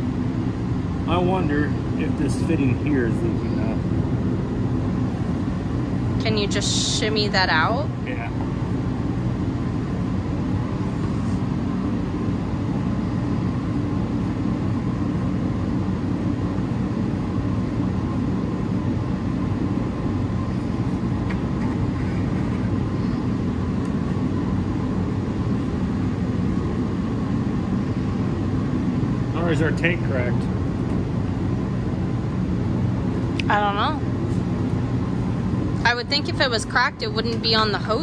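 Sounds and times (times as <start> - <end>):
low mechanical roar: 0.0 - 38.0.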